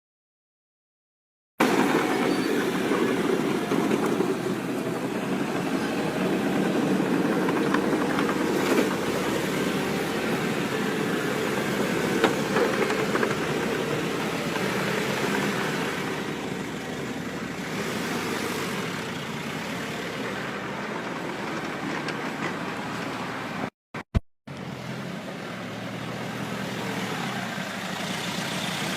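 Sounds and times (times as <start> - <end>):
heavy machinery running: 1.6 - 23.5.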